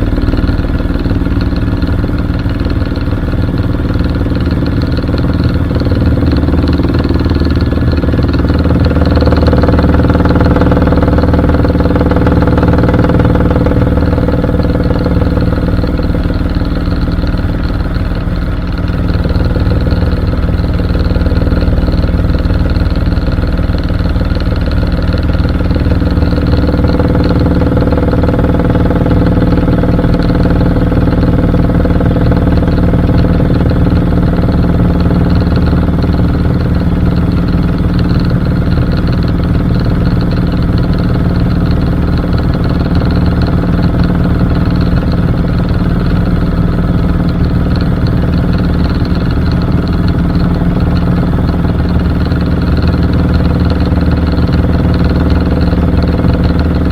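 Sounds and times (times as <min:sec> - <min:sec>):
helicopter rotor and engine drone: 0:00.0 - 0:56.9
thin high whine: 0:04.9 - 0:22.2.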